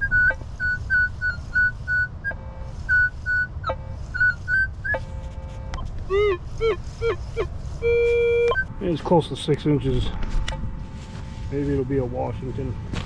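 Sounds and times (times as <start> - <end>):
metal detector beeping: 0.0 - 9.0.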